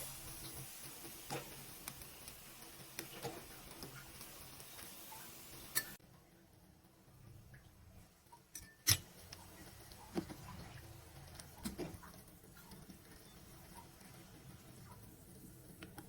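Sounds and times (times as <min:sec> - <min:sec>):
kitchen utensils clicking and knocking: 0:08.5 - 0:09.1.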